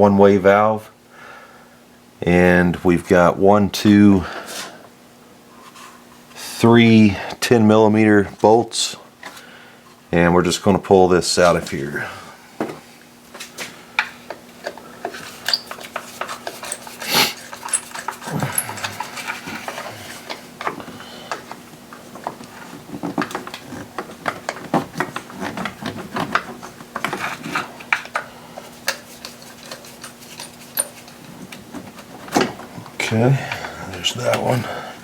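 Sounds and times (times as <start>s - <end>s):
faint steady hum: 0.0s - 35.0s
hand tools clinking on metal: 15.5s - 19.9s, 28.9s - 31.4s.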